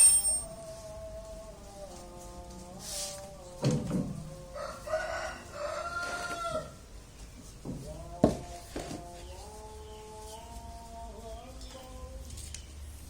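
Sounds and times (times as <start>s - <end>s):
rooster crowing: 4.3s - 6.8s.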